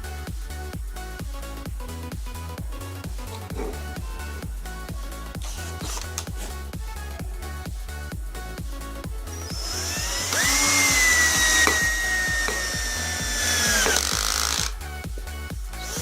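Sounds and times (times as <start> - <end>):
music with steady beat: 0.0 - 16.0
cordless drill motor whining: 9.4 - 14.8.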